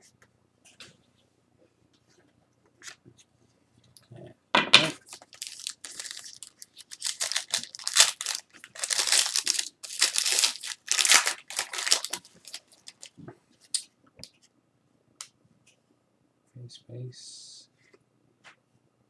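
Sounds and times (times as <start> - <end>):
card pack wrapper tearing: 4.8 - 13.2.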